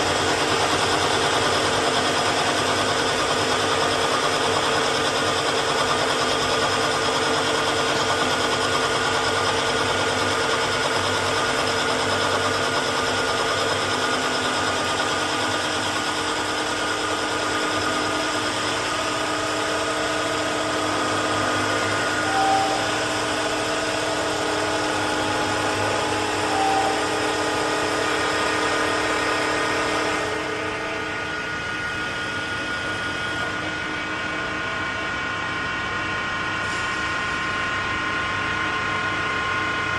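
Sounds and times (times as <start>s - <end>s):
wood lathe whirring and cutting: 0.0s - 33.7s.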